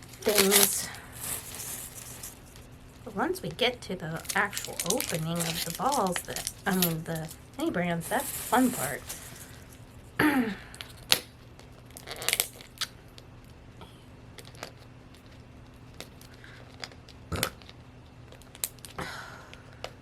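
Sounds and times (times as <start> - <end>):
plastic tearing rustles: 0.0 - 10.1, 11.8 - 12.9
plastic wrapping crinkling: 0.0 - 10.2, 11.7 - 12.9.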